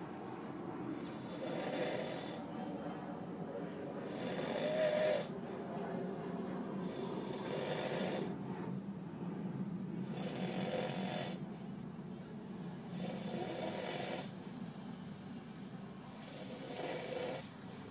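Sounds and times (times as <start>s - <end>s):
steady low hum: 0.0s - 17.9s
man snoring: 0.9s - 2.4s, 4.0s - 5.4s, 6.8s - 8.3s, 10.0s - 11.4s, 12.9s - 14.4s, 16.1s - 17.9s.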